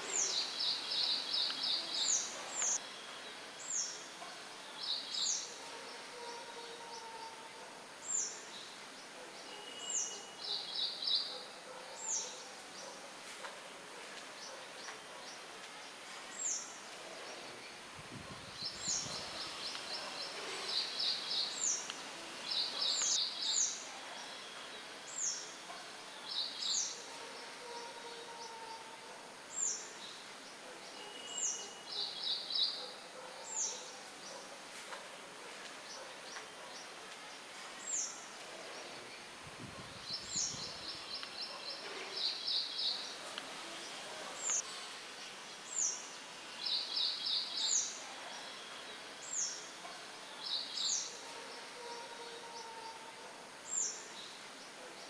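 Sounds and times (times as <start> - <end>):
songbirds chirping: 0.0 - 55.0
light wind in leaves: 8.0 - 27.1, 29.4 - 52.6.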